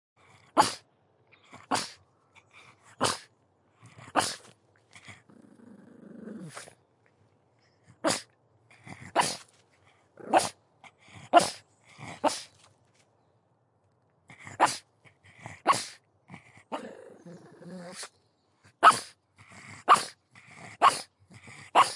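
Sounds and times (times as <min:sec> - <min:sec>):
dog grumbling: 0:02.9 - 0:06.8, 0:14.3 - 0:18.1
dog barking: 0:18.8 - 0:19.1, 0:20.8 - 0:21.1.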